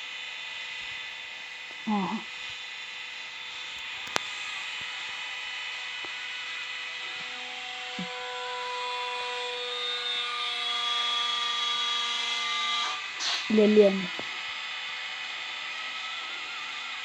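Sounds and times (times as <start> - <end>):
pump motor whining: 5.8 - 14.5.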